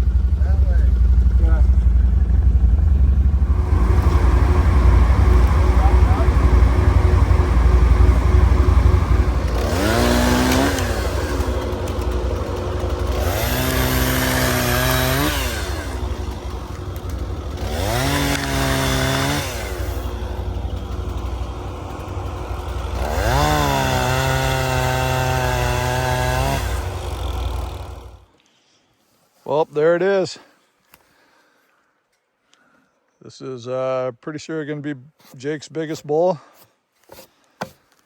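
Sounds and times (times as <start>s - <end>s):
low rumble over rough ground: 0.0s - 9.6s
atv engine revving: 0.0s - 28.3s.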